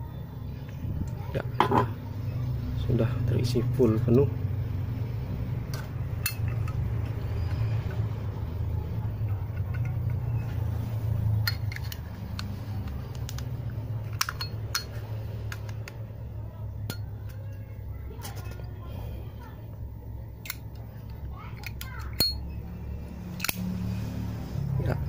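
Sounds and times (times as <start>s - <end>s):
steady low hum: 0.0s - 25.0s
metallic lighter clicks and taps: 23.4s - 23.7s.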